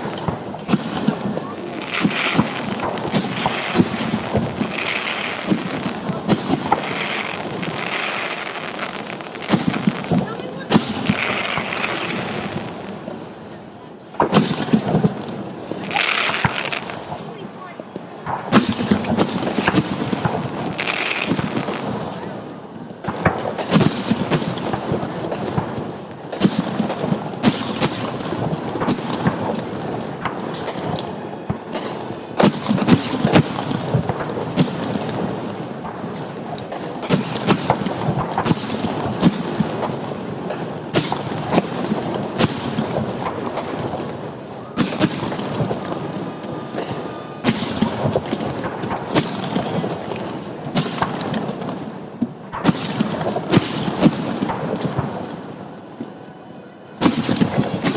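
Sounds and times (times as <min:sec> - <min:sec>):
fireworks booming and crackling: 0:00.0 - 0:57.9.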